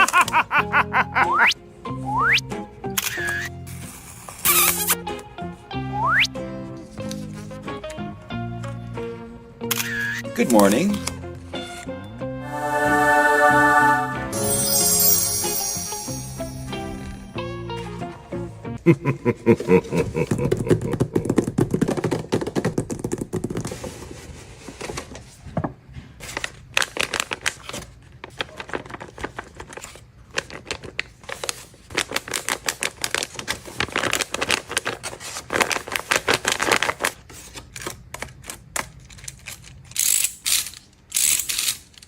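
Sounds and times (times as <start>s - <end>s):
paper and packaging rustling: 6.8s - 7.9s, 23.4s - 39.9s.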